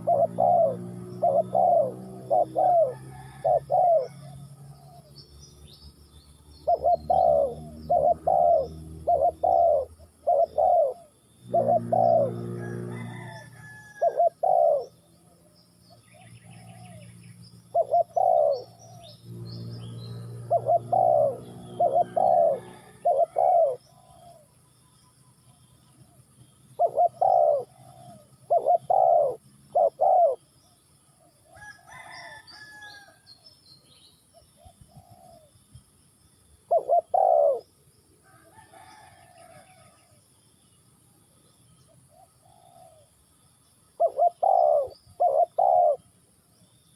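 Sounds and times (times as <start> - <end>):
dove cooing: 0.0 - 5.2, 6.6 - 15.0, 16.1 - 24.5, 26.8 - 30.5, 34.6 - 35.5, 36.6 - 37.7, 42.1 - 43.2, 44.0 - 46.2
small birds chirping: 0.0 - 13.3, 14.0 - 31.5, 38.9 - 46.9.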